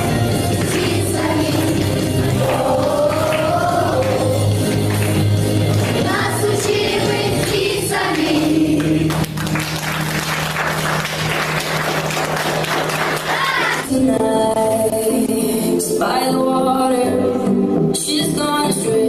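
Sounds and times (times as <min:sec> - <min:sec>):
group singing: 0:00.0 - 0:04.9, 0:05.8 - 0:09.3
backing track music: 0:00.0 - 0:19.0
audience applause: 0:02.4 - 0:13.9.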